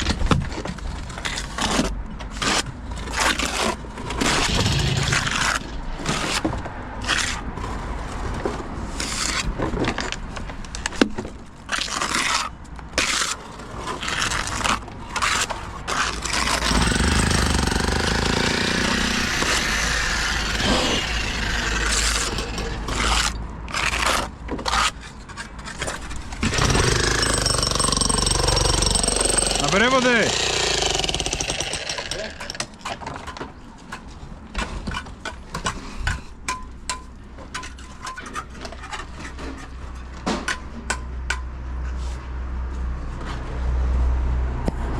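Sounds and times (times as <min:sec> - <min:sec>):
power tool running: 0:16.4 - 0:23.3, 0:26.4 - 0:32.6.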